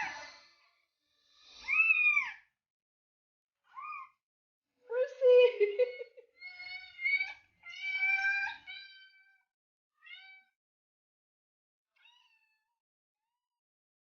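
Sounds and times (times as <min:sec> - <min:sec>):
cat meowing: 0:06.4 - 0:09.4, 0:10.0 - 0:10.6, 0:12.0 - 0:12.6.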